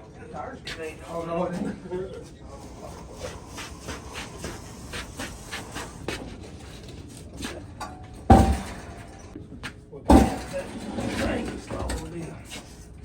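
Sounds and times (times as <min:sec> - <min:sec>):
loud metal bang with ringing: 0:08.3 - 0:09.4.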